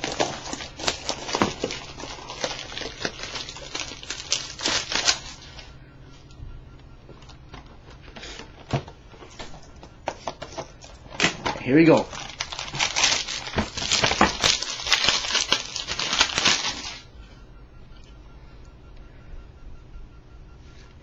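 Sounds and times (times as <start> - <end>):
packaging crinkling and tearing: 0.0 - 5.7, 7.1 - 17.1.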